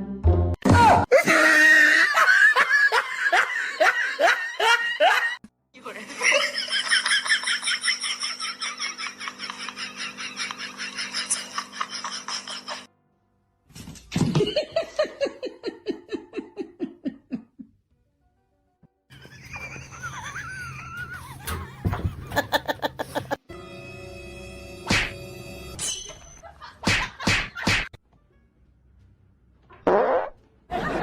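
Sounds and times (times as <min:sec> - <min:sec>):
person laughing: 0:01.1 - 0:05.4, 0:06.0 - 0:12.9, 0:14.3 - 0:17.8, 0:19.1 - 0:23.5.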